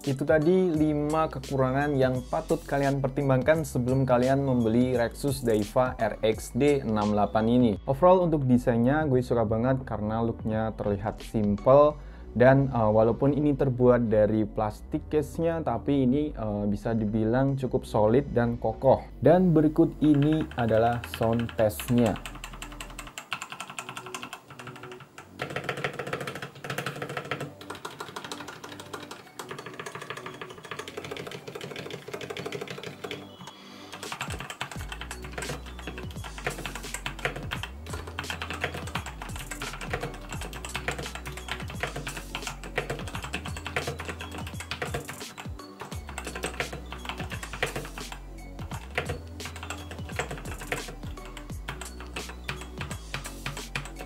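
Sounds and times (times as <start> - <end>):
background music with bass: 0.0 - 23.1, 32.4 - 54.0
typing on mechanical keyboard: 20.0 - 54.0.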